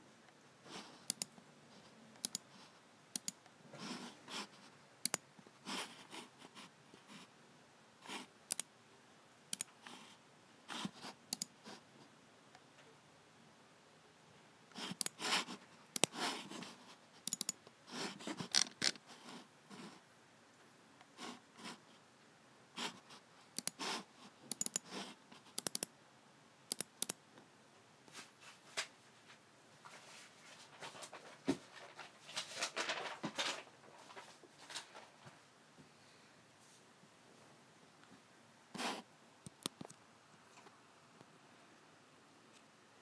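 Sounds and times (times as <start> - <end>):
computer mouse clicking: 1.0 - 1.4, 2.2 - 2.5, 3.1 - 3.5, 5.0 - 5.2, 8.5 - 8.7, 9.5 - 9.9, 11.3 - 11.6, 14.8 - 15.3, 15.9 - 16.2, 17.2 - 17.7, 23.5 - 25.9, 26.7 - 27.2, 39.4 - 40.0.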